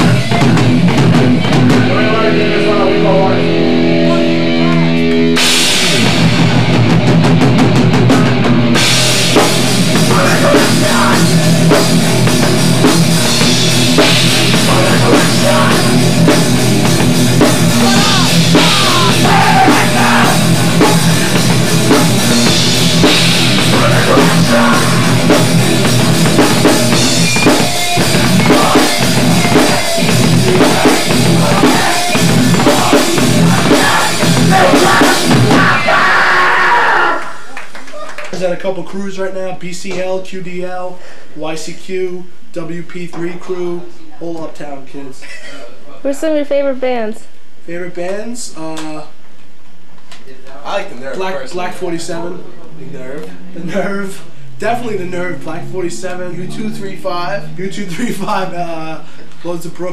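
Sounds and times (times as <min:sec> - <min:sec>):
heavy rock music: 0:00.0 - 0:37.2.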